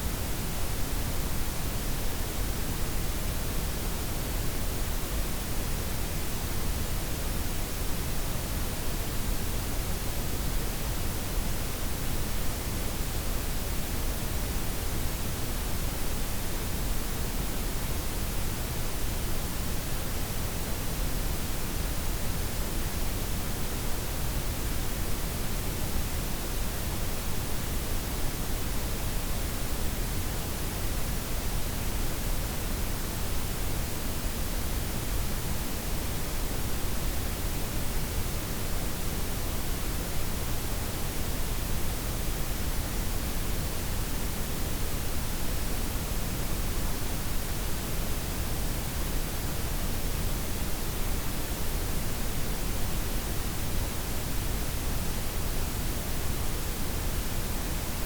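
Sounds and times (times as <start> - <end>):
steady noise hiss: 0.0 - 58.0.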